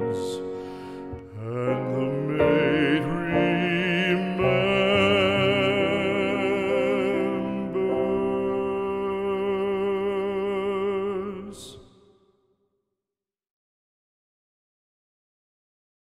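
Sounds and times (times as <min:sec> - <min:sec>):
musical accompaniment: 0:00.0 - 0:11.9
trained voice singing with vibrato: 0:01.2 - 0:11.9.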